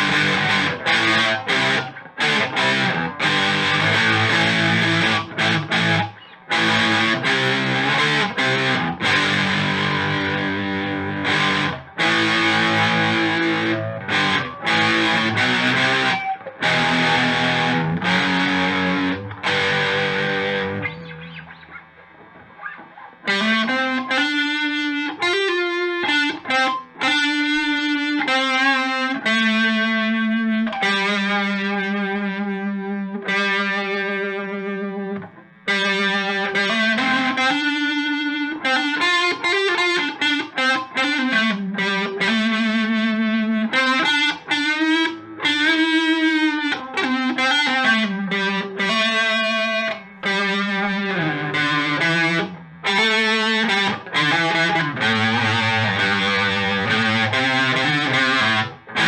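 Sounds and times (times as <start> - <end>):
electric guitar with wavering modulation: 0.0 - 59.0.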